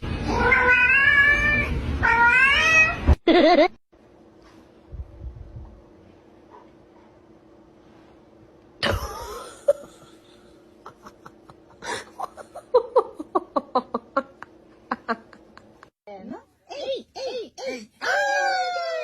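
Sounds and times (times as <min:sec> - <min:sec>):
person laughing: 0:03.3 - 0:03.8, 0:08.8 - 0:15.9.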